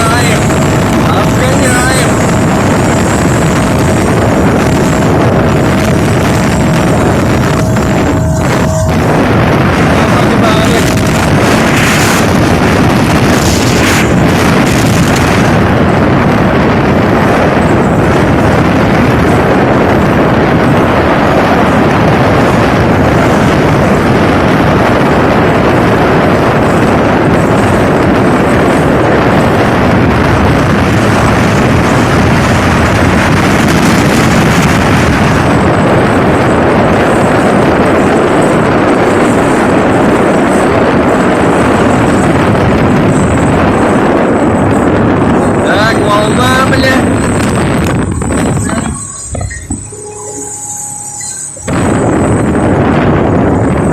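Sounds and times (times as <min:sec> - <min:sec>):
motorboat engine and water rush: 0:00.0 - 0:53.9.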